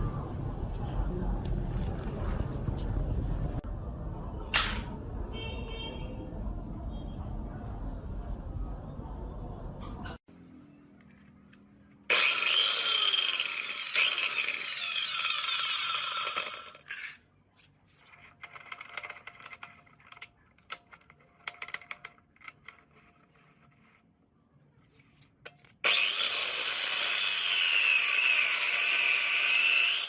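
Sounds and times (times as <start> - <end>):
electric cutting machine running: 12.1 - 16.8, 25.8 - 30.0
light scraping and rubbing: 16.9 - 25.7.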